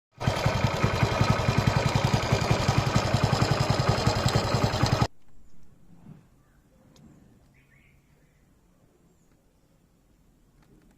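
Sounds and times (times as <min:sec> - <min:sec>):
engine rattle: 0:00.2 - 0:05.1
motorcycle engine idling: 0:00.2 - 0:05.1.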